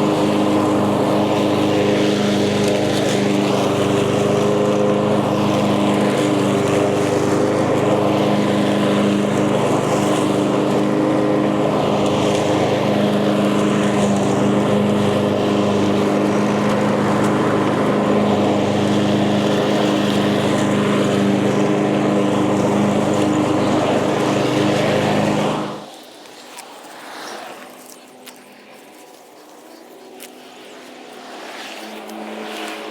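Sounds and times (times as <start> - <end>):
lawn mower engine running: 0.0 - 26.0.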